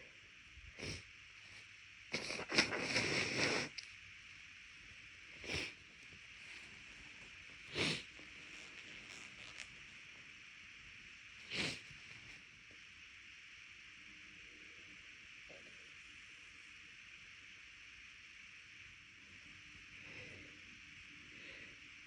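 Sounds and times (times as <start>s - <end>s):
short sniffs: 0.8s - 3.8s, 5.4s - 5.8s, 7.7s - 8.1s, 11.5s - 11.9s
person blowing nose: 2.1s - 3.8s, 5.4s - 5.8s, 7.7s - 9.6s, 11.5s - 11.8s.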